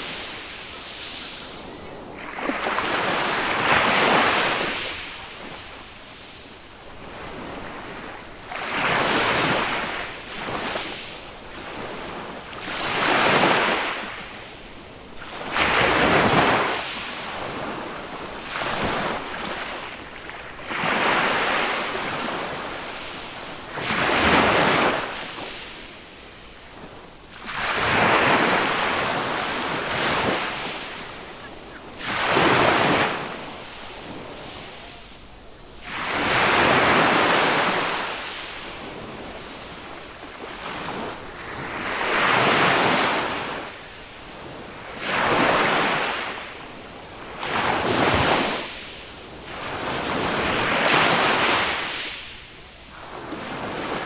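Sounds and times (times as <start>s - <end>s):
small waves breaking on beach: 0.0s - 54.0s.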